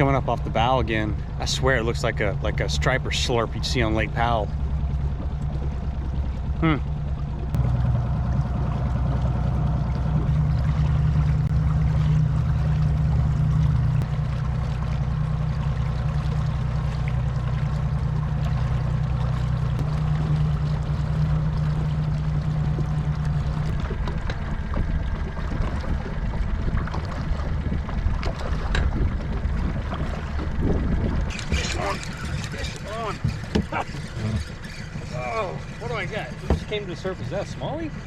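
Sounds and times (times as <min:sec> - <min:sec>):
boat motor humming: 0:00.0 - 0:38.0
water noise: 0:00.0 - 0:38.0
wind noise: 0:25.8 - 0:34.4.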